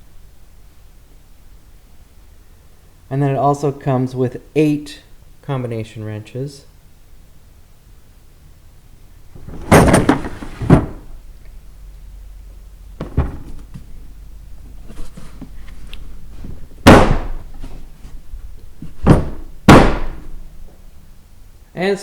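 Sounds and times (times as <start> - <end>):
plastic tool case clacking shut: 9.4 - 11.1, 13.0 - 13.8
tools rattling in drawers: 9.4 - 11.1.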